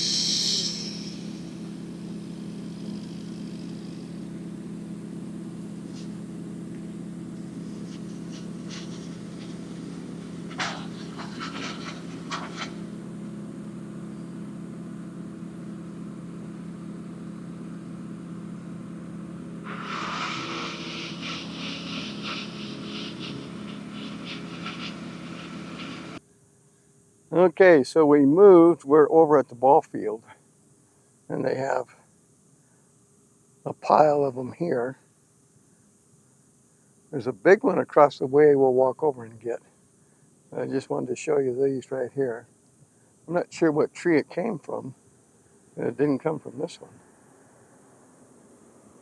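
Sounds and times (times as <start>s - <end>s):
engine humming: 0.0s - 26.2s
crackling noise: 5.5s - 14.0s, 19.4s - 26.2s.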